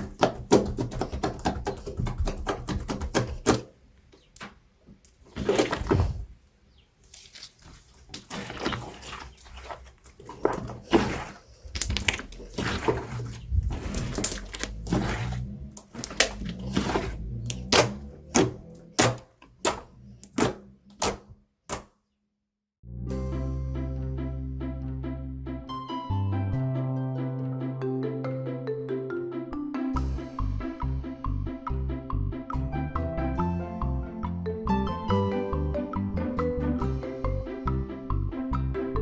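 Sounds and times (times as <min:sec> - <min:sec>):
slime squishing with sticky pops: 0:07.0 - 0:21.9
music: 0:22.8 - 0:39.0.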